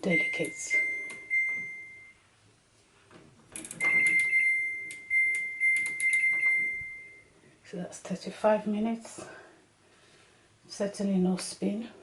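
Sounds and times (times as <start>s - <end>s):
high electronic beeps: 3.8s - 7.2s.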